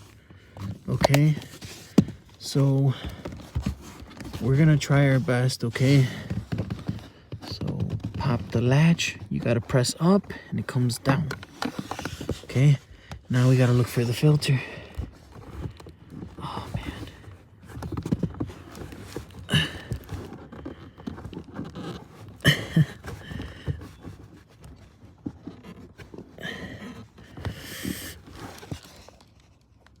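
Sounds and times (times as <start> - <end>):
plastic clicking and rattling: 0.5 - 2.4, 11.0 - 13.3.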